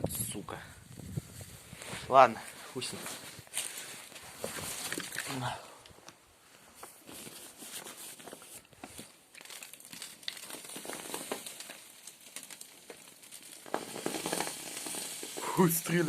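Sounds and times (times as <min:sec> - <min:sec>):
campfire crackling: 0:00.5 - 0:16.0
sharp pops: 0:09.9 - 0:16.0.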